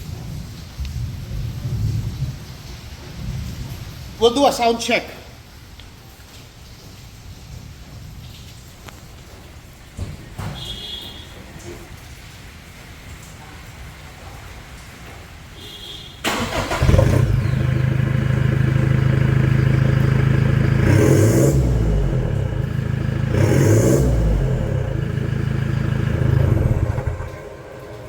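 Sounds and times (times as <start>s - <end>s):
engine cranking: 16.2s - 28.0s
engine idling: 16.2s - 28.0s
engine revving: 16.3s - 28.0s.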